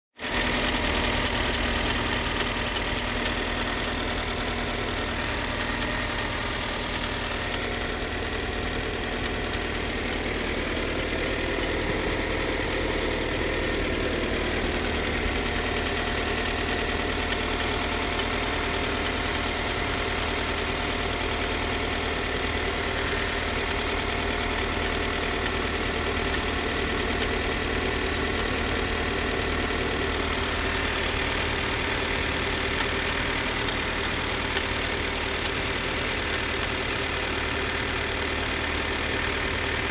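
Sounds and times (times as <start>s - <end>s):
car engine idling: 0.2s - 39.9s
metallic engine tapping: 0.2s - 39.9s.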